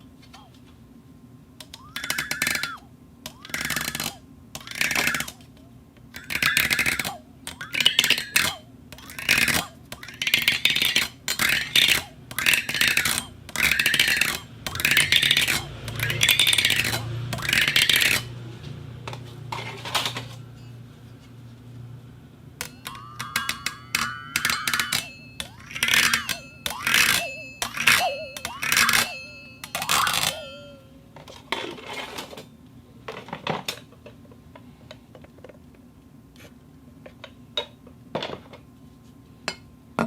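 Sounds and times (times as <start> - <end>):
low hum: 12.6 - 31.2
cup scraping on rotating plate: 22.6 - 30.9.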